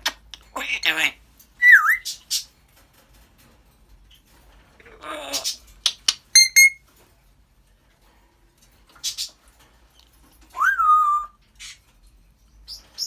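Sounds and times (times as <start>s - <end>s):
parrot whistling: 6.4s - 6.8s.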